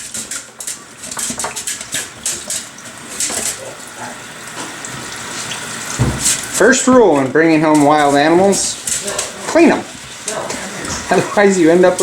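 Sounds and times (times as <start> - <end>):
tap water running and splashing: 0.0 - 12.0.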